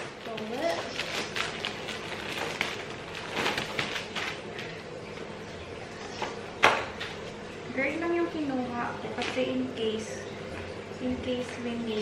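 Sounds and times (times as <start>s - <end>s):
fabric rustling: 0.2s - 4.8s.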